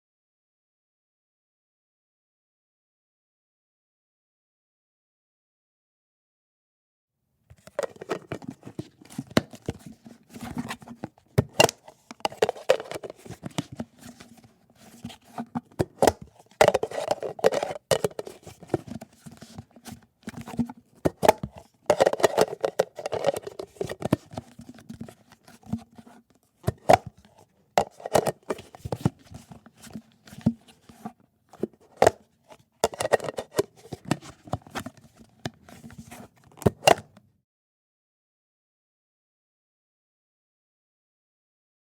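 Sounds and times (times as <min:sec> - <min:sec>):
stiff plastic scraping and rattling: 0:07.5 - 0:37.2
plastic lids snapping and popping: 0:07.6 - 0:19.6, 0:20.3 - 0:25.8, 0:27.8 - 0:30.6, 0:32.8 - 0:34.9, 0:36.6 - 0:37.2.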